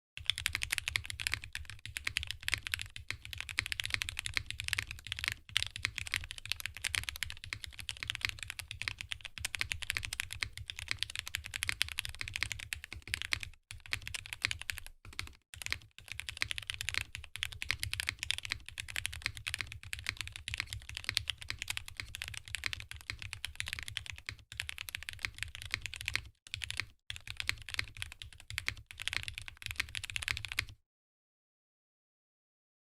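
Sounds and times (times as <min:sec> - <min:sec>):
mechanical keyboard typing: 0:00.2 - 0:30.8.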